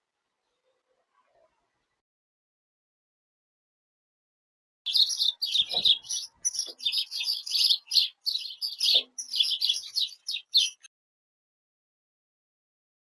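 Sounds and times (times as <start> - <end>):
songbirds chirping: 4.9 - 10.9.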